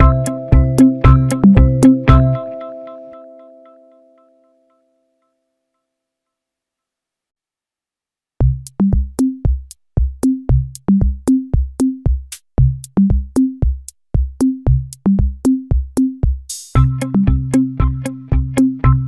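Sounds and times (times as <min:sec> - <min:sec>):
electronic music with drum-machine beat: 0:00.0 - 0:03.2, 0:08.4 - 0:19.0.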